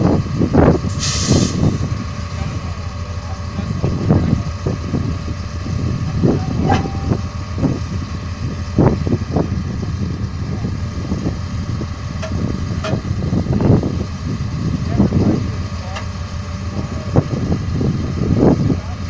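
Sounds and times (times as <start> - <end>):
heavy vehicle engine idling: 0.0 - 19.0
knocks and clunks: 6.5 - 8.1, 12.2 - 13.1.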